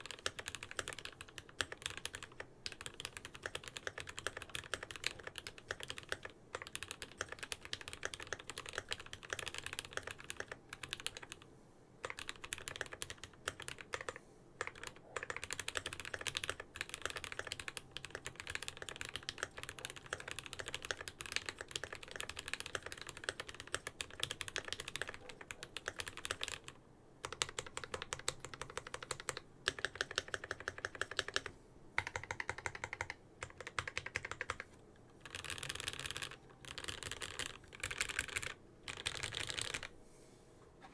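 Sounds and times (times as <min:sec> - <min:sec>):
mechanical keyboard typing: 0:00.0 - 0:11.4, 0:12.0 - 0:39.9.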